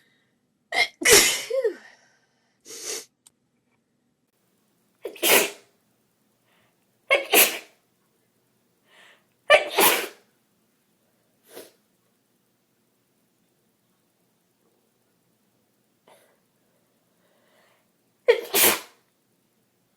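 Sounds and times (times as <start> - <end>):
person sneezing: 0.8 - 1.9, 5.0 - 5.7, 7.1 - 7.8, 9.5 - 10.3, 11.5 - 11.8, 18.3 - 19.0.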